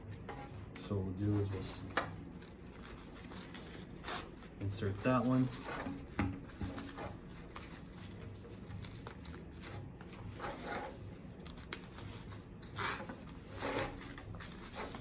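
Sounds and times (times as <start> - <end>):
strap scraping: 2.7 - 11.1, 11.9 - 15.0.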